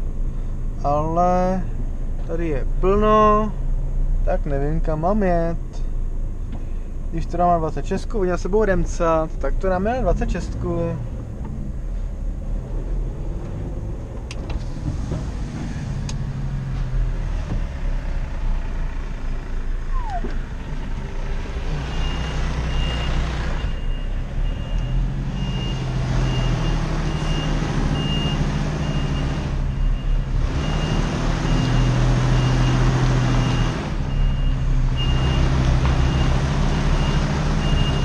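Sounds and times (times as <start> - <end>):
diesel engine running: 8.5 - 38.0
truck reverse alarm beeping: 19.9 - 20.4, 21.9 - 38.0.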